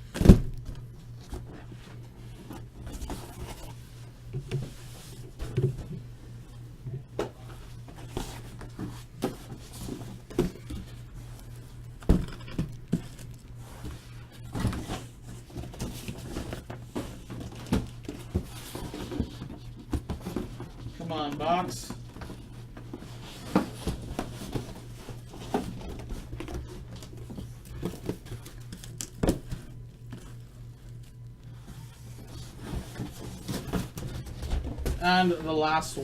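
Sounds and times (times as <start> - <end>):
steady low hum: 0.0 - 36.0
cardboard boxes knocking and scraping: 7.2 - 11.0, 13.9 - 20.9, 22.1 - 30.3, 32.3 - 35.4.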